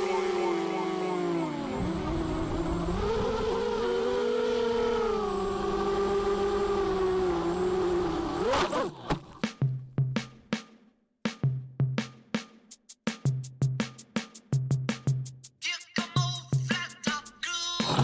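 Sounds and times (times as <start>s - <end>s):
quadcopter motors whining: 0.0s - 9.4s.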